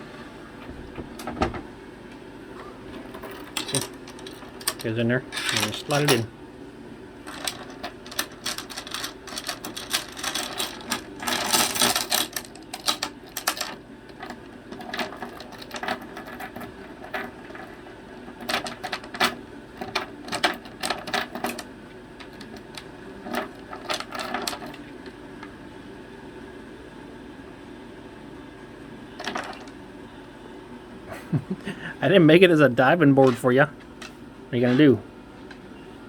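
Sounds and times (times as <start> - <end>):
metal lock and bolt rattling: 3.4 - 6.2, 7.3 - 13.7.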